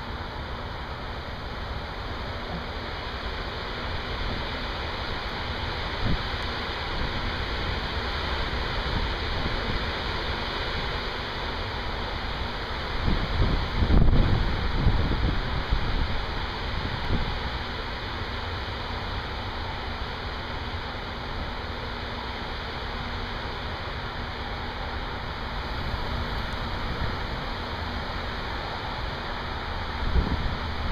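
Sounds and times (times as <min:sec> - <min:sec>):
heavy rain pouring: 0:01.8 - 0:30.9
wind buffeting microphone: 0:13.0 - 0:17.4, 0:29.8 - 0:30.9.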